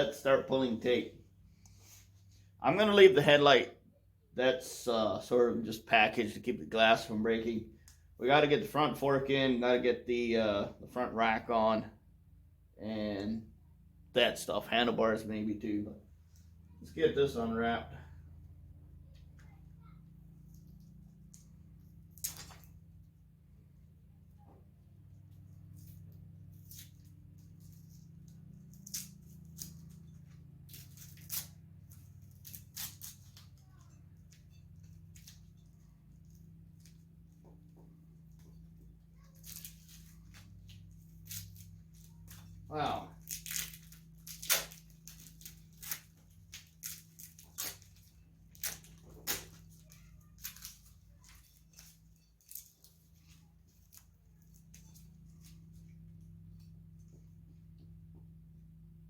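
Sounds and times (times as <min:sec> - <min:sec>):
steady low hum: 0:00.0 - 0:59.0
tape peeling and tearing: 0:22.1 - 0:22.8, 0:25.7 - 0:37.0, 0:39.2 - 0:55.5.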